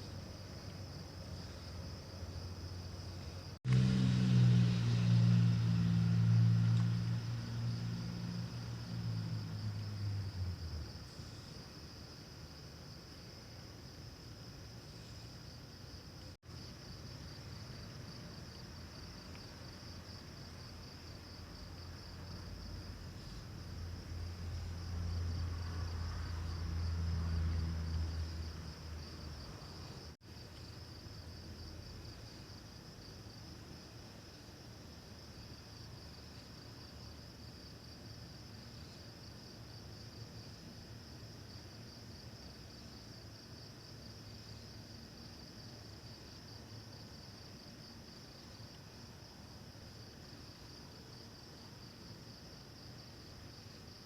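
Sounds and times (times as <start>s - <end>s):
low engine hum: 2.4s - 11.2s, 21.4s - 30.2s
low hum: 2.4s - 11.4s.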